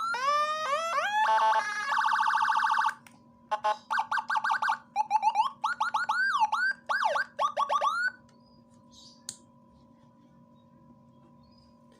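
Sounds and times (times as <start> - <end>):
electronic siren chirps and sweeps: 0.0 - 2.9, 3.6 - 8.2
faint steady hum: 0.0 - 11.9.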